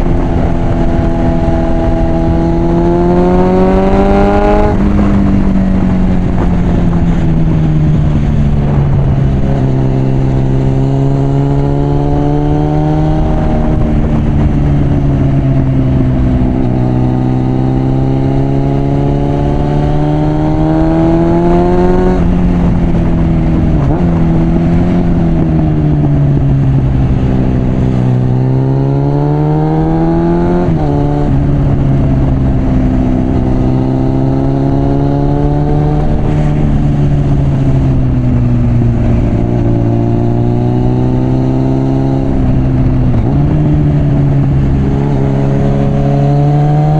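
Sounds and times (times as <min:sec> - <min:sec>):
motorcycle engine revving: 0:00.0 - 0:46.9.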